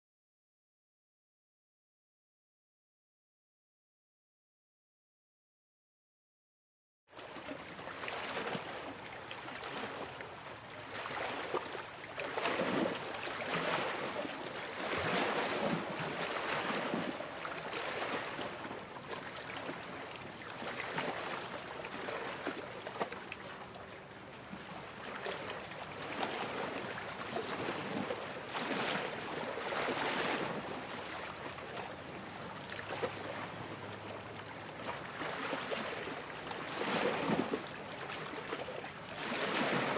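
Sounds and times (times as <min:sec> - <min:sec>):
waves splashing against rocks: 0:11.0 - 0:23.6, 0:34.9 - 0:38.6.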